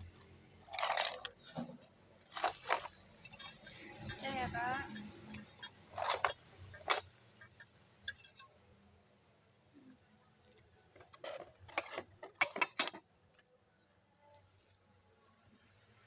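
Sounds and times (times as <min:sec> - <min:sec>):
glass shards clinking: 0:00.0 - 0:01.3, 0:02.3 - 0:07.1, 0:08.1 - 0:08.4.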